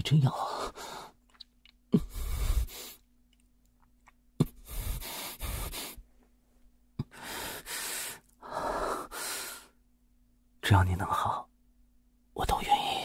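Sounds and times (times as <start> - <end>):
man breathing: 0.4 - 1.2, 1.9 - 3.1, 4.4 - 6.2, 7.0 - 9.8.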